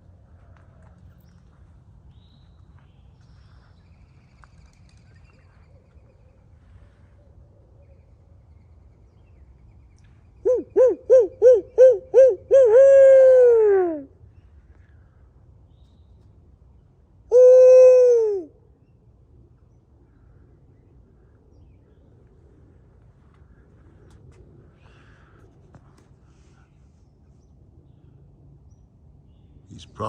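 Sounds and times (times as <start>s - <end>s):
owl hooting: 10.4s - 14.2s, 17.3s - 18.6s.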